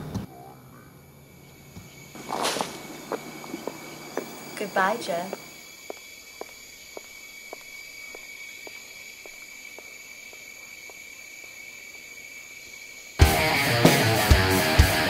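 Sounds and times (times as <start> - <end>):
crickets chirring: 0.2 - 15.0
faint footsteps: 1.7 - 12.2
loud rock music: 13.2 - 15.0.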